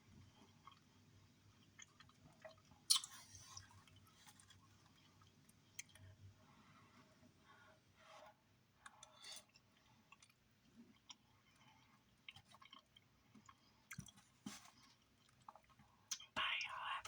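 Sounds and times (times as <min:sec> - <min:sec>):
person chewing food: 0:00.5 - 0:00.9, 0:08.8 - 0:16.4
mouth clicks and smacks: 0:02.9 - 0:03.2, 0:15.5 - 0:17.0.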